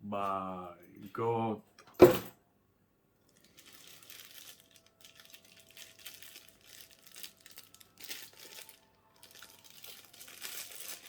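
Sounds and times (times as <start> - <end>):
plastic wrapping crinkling: 3.3 - 11.0.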